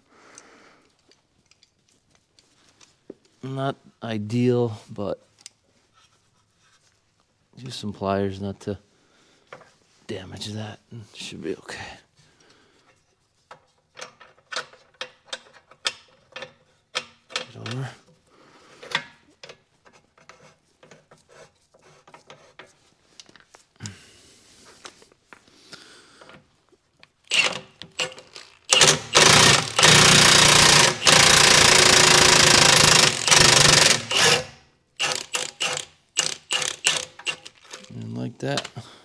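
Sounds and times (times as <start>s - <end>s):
impact wrench hammering: 27.3s - 37.5s.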